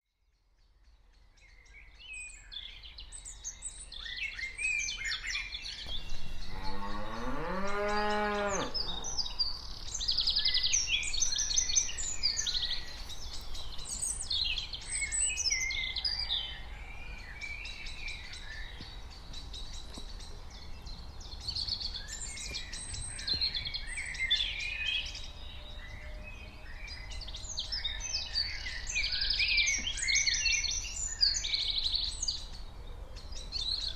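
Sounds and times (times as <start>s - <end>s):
birds chirping: 5.5s - 16.4s
cow mooing: 6.0s - 9.5s.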